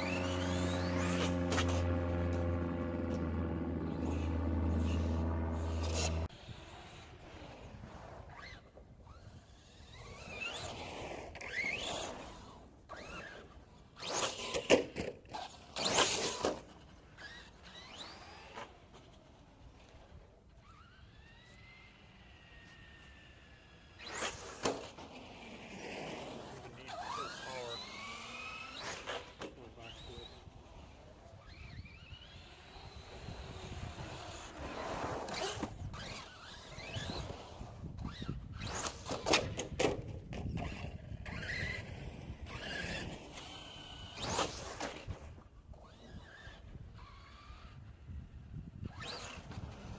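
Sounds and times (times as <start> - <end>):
electric motor whining: 0.0 - 6.3.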